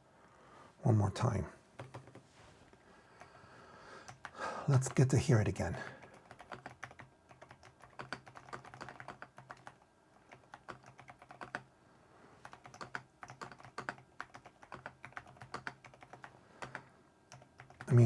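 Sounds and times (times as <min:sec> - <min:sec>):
mechanical keyboard typing: 0:01.8 - 0:02.2, 0:04.0 - 0:04.9, 0:06.0 - 0:11.7, 0:12.4 - 0:17.9.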